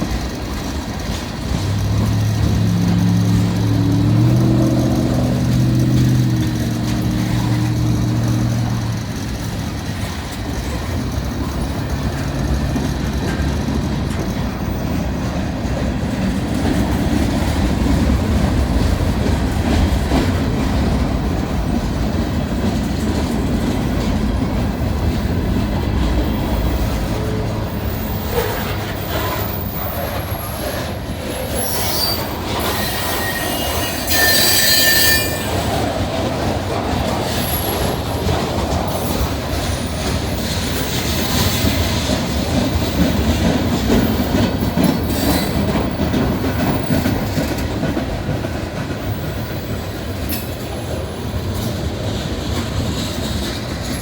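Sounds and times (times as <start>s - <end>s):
freight train wheels rumbling: 0.0s - 54.0s
high flange squeals: 26.7s - 35.8s.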